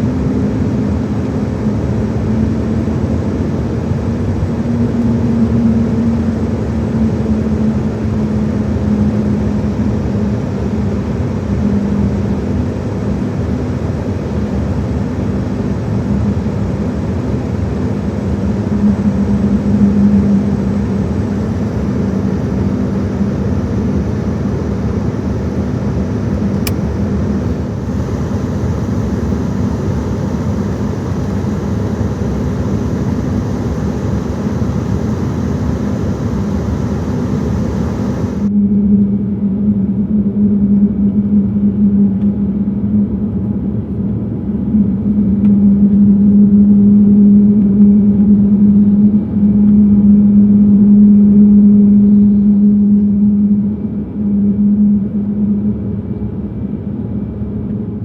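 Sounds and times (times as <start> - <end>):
aircraft cabin rumble: 0.0 - 58.0
low hum: 15.6 - 58.0
short click: 26.6 - 26.9.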